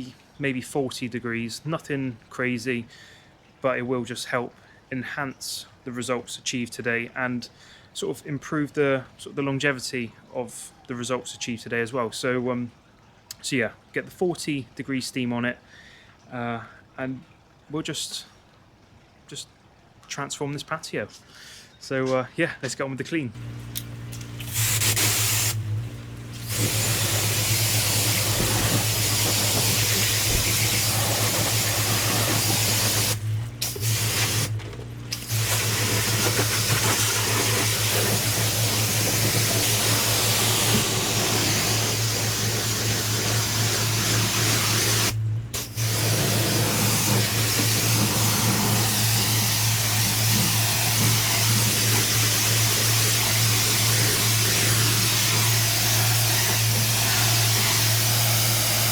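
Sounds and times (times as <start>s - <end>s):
low machine hum: 23.4s - 48.9s
pressure washer spray hissing: 23.8s - 58.9s.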